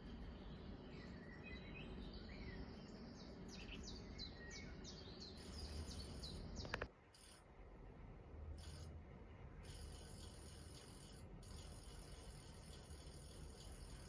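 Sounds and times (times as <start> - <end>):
small birds chirping: 0.0 - 7.4, 8.6 - 14.0
sharp click: 6.6 - 6.9.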